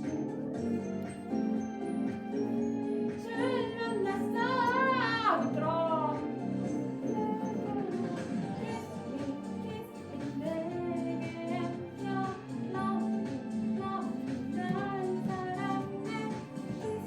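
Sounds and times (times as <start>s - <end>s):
instrumental backing music: 0.0s - 17.0s
woman singing: 3.1s - 6.4s, 7.0s - 17.0s.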